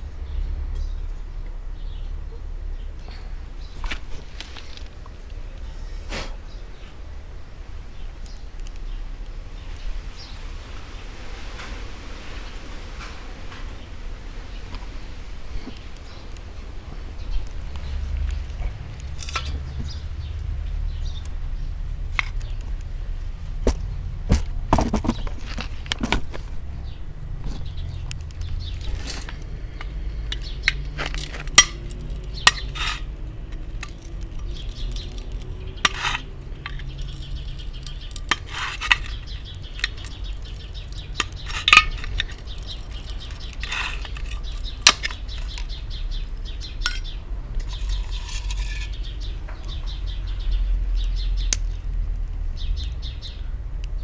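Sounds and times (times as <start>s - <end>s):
steady low rumble: 0.0s - 47.9s.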